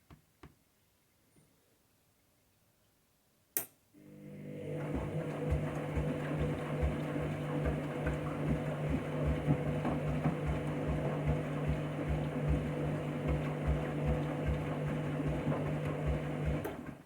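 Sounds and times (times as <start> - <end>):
washing machine motor hum: 4.0 - 17.0.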